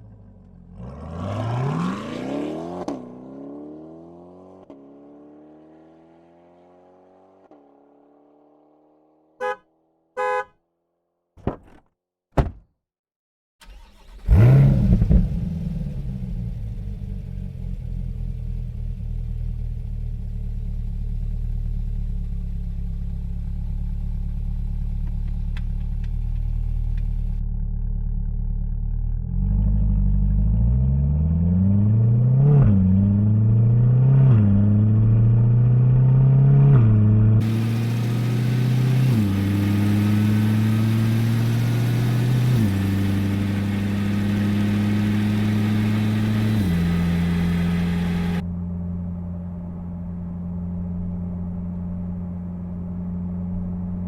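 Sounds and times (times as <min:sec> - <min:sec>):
car horn chirps: 0:09.4 - 0:10.6
clicks and thunks: 0:11.4 - 0:12.7
engine revving in blips: 0:13.6 - 0:16.7, 0:29.1 - 0:48.4
car engine starting and idling: 0:13.6 - 0:30.9, 0:37.4 - 0:54.0.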